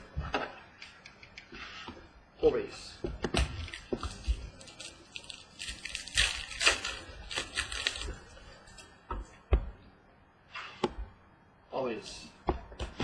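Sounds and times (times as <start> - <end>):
cards and wrapper rustling: 3.6 - 8.3.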